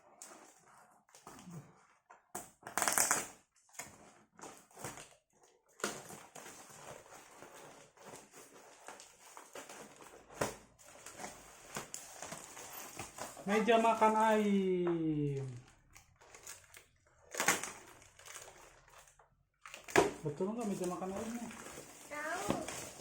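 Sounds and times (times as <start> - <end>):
packaging ripping: 2.6 - 5.1, 15.3 - 23.0
packaging rustling: 2.7 - 23.0.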